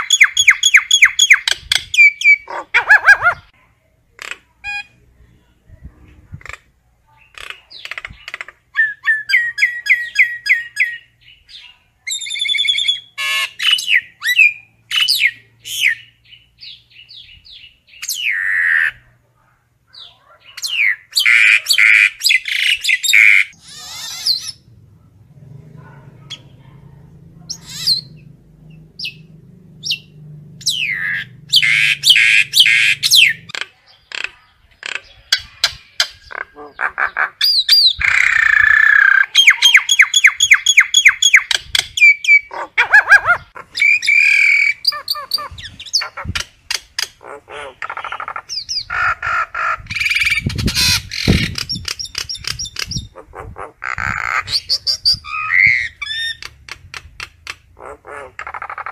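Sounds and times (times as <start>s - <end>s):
myna calling: 0.0s - 3.6s, 19.9s - 58.9s.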